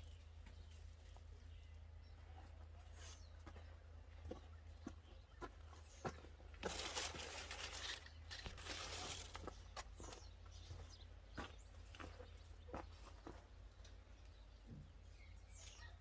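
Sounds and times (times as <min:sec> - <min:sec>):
rustling and tearing: 0:06.6 - 0:09.5.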